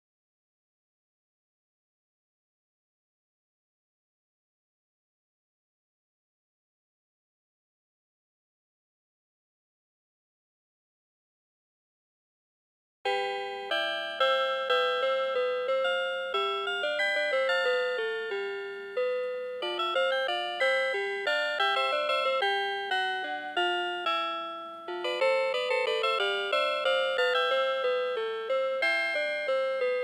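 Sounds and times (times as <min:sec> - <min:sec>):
alarm clock electronic melody: 0:13.1 - 0:30.0.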